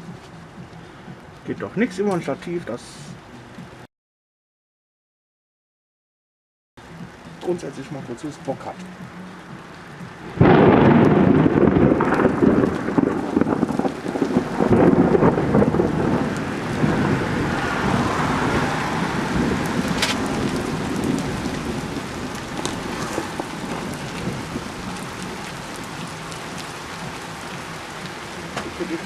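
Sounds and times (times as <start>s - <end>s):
steady rain falling: 0.0s - 3.9s, 6.8s - 29.0s
thunderclap rumbling: 9.0s - 29.0s.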